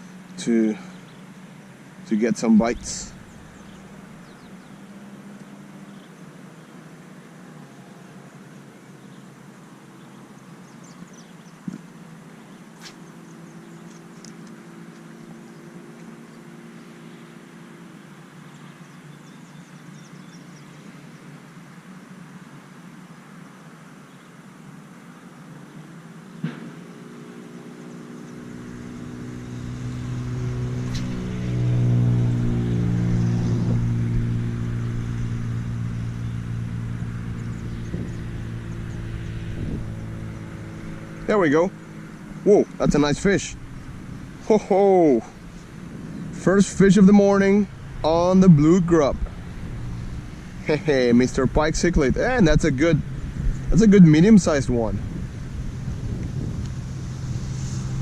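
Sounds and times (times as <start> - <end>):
low rumble: 2.5 - 4.6, 30.5 - 58.0
steady hum: 28.7 - 58.0
sharp click: 30.9 - 31.2.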